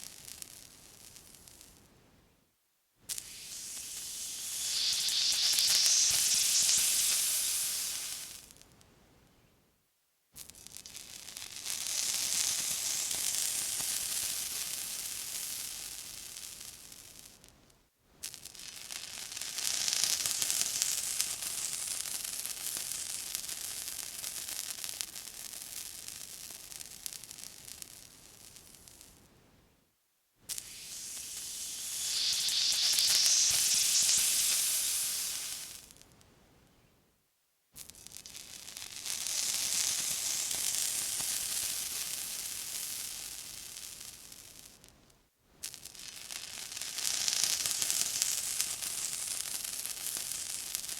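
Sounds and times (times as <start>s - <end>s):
water sizzling: 3.1s - 8.4s, 30.5s - 35.8s
water sizzling and hissing: 3.1s - 8.5s, 11.9s - 16.6s, 18.5s - 24.8s, 30.5s - 35.9s, 38.2s - 44.7s, 45.6s - 50.9s.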